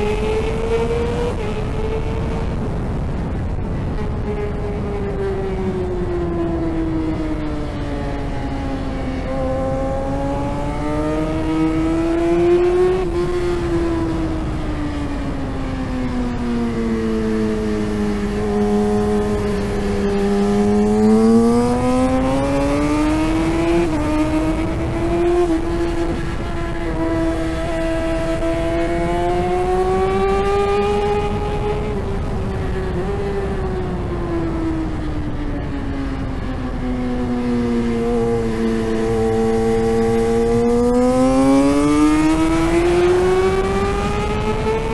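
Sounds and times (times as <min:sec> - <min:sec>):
motorcycle engine at high revs: 0:00.0 - 0:15.6, 0:16.2 - 0:44.9
gear changes: 0:16.3 - 0:34.4.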